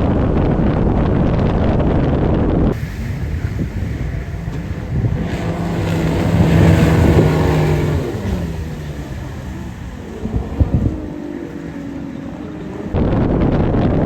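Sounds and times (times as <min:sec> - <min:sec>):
wind noise: 0:00.0 - 0:14.0
water noise: 0:02.6 - 0:13.6
outboard motor running: 0:02.8 - 0:13.0.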